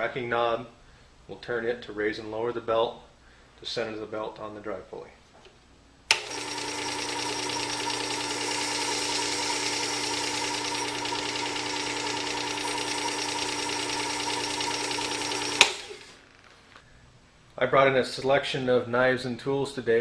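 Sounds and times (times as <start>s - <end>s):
belt sharpener motor humming: 6.1s - 16.4s.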